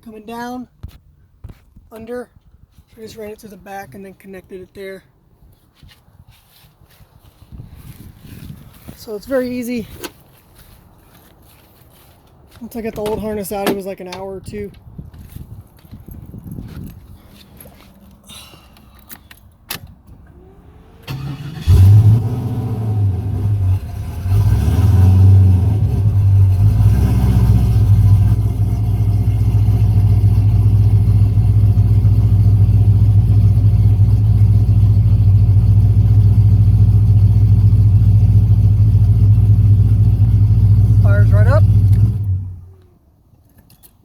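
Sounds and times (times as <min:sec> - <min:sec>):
engine cranking: 0:20.2 - 0:22.7
engine starting and idling: 0:20.2 - 0:24.8.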